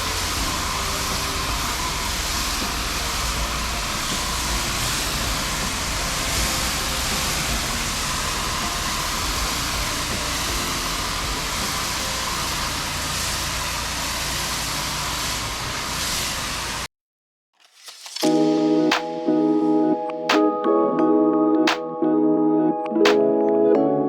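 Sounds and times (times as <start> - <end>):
pressure washer water jet hiss: 0.0 - 16.9.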